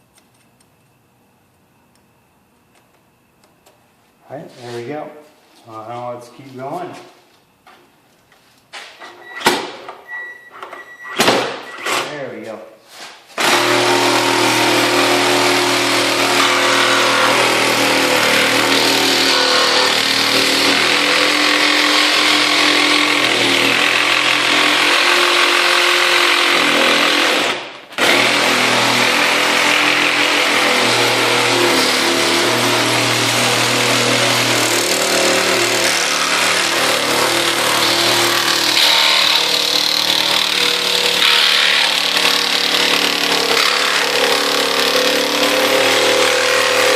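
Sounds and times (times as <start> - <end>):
reciprocating saw cutting wood: 13.4 - 46.9.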